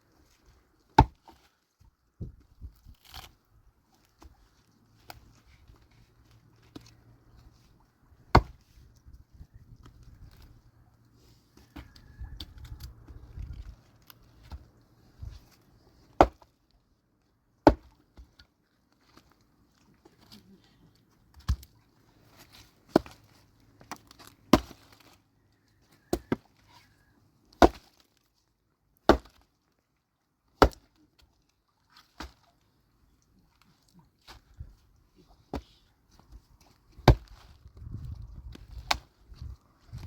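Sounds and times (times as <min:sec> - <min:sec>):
axe chopping wood: 0:01.0 - 0:01.4, 0:08.3 - 0:08.6, 0:16.2 - 0:16.5, 0:17.6 - 0:18.0, 0:22.9 - 0:23.3, 0:23.9 - 0:24.9, 0:26.1 - 0:26.5, 0:27.6 - 0:28.0, 0:29.1 - 0:29.4, 0:30.6 - 0:30.9, 0:37.0 - 0:37.6, 0:38.5 - 0:39.1.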